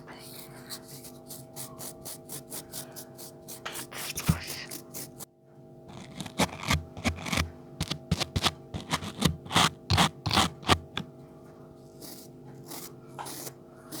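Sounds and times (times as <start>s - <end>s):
scratching and scraping strokes: 5.9s - 11.0s
soft brushing: 5.9s - 11.0s.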